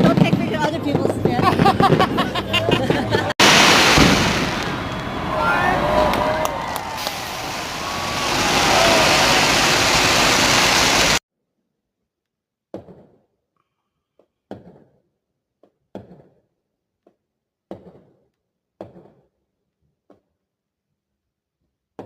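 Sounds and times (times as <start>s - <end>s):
firework hissing: 3.4s - 11.2s.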